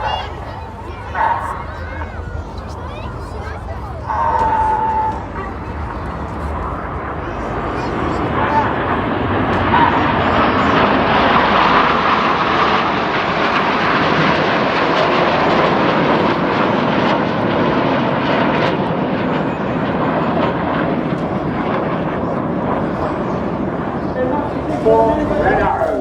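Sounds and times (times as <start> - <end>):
jet roar: 0.0 - 26.0.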